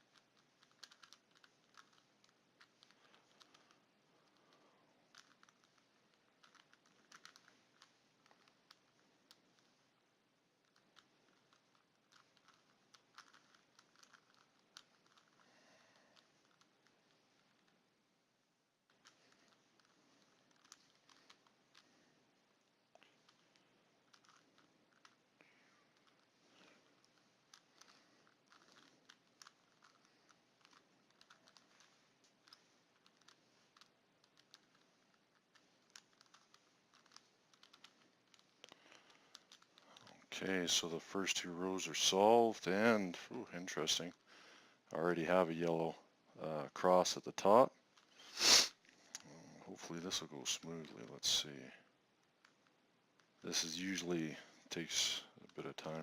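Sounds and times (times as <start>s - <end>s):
plastic puzzle cube clicking: 0.0s - 4.4s, 5.1s - 9.7s, 10.6s - 15.4s, 16.1s - 17.7s, 18.8s - 21.8s, 23.2s - 25.3s, 25.9s - 40.2s, 48.0s - 49.3s.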